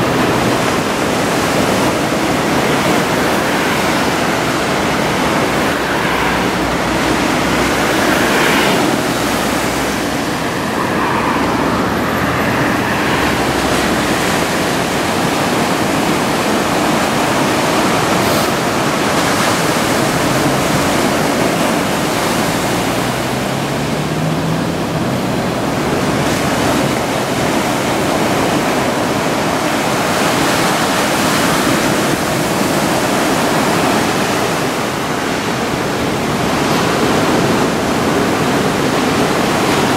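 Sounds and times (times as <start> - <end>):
vehicle passing: 0.0 - 28.2
heavy surf roaring: 0.0 - 39.9
road traffic: 0.0 - 39.9.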